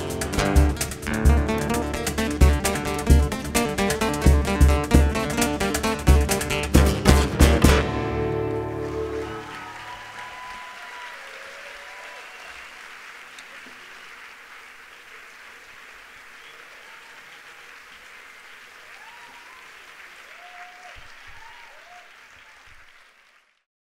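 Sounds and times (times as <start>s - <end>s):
strummed acoustic guitar chords: 0.0s - 9.7s
audience applause: 7.8s - 23.7s.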